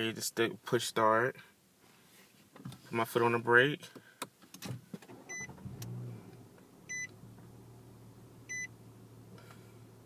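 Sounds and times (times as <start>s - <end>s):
car engine starting and idling: 4.6s - 10.0s
dashboard warning chime beeping: 5.3s - 5.6s, 6.9s - 7.1s, 8.5s - 8.7s.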